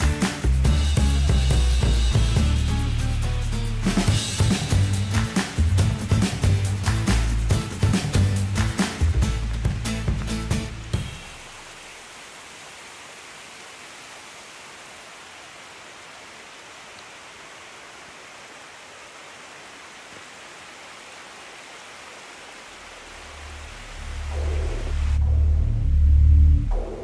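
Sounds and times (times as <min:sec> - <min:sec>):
water rushing: 0:00.0 - 0:27.0
deep low rumble: 0:23.5 - 0:27.0.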